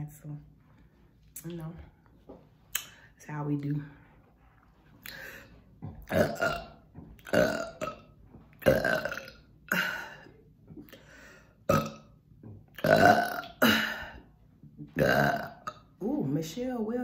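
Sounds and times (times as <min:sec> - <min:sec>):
woman burping: 0:06.0 - 0:10.9, 0:11.6 - 0:15.9.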